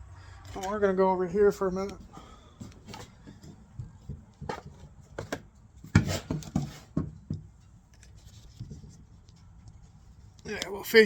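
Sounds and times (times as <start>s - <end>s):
camera handling knocks and rubs: 2.6s - 9.4s.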